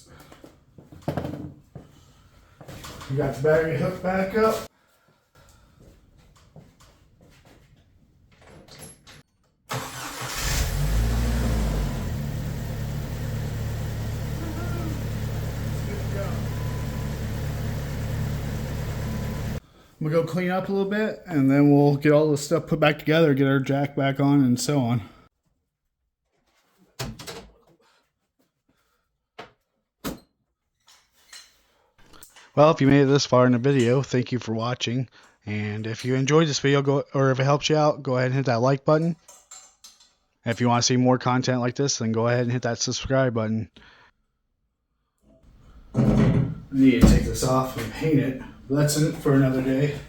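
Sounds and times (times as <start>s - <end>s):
knocks and clunks of handling: 0.8s - 1.9s, 45.5s - 48.1s
car engine starting and idling: 9.7s - 19.6s, 45.5s - 50.0s
faint starter clicks: 9.7s - 19.6s.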